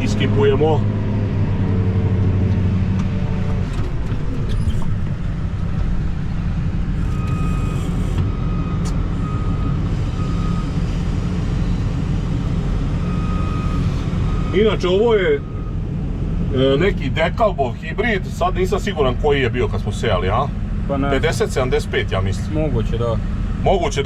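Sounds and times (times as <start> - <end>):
combine harvester running: 0.0 - 22.6
short electronic beeps: 7.0 - 10.7.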